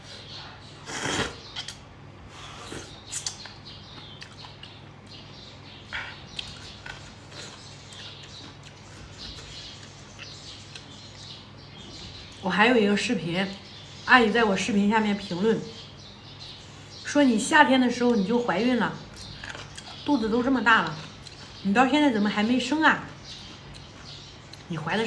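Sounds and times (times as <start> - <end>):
person chewing: 2.5 - 4.9, 6.0 - 11.3, 19.1 - 20.1, 21.0 - 21.6, 23.3 - 24.7.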